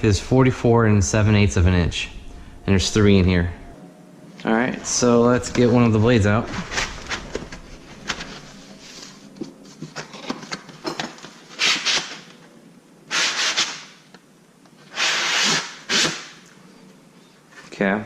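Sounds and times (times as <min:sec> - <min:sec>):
packaging scraping and rustling: 0:06.4 - 0:12.4.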